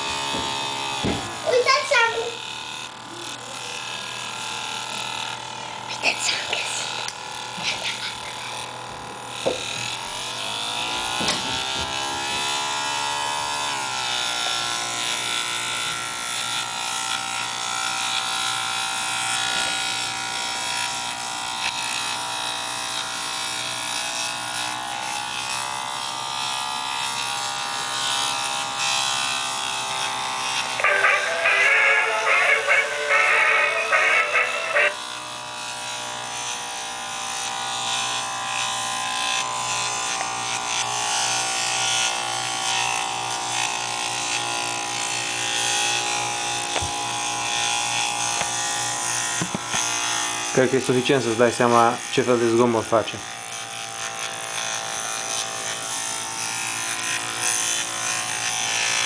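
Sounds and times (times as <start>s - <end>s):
harsh buzzing chatter: 0.0s - 59.0s.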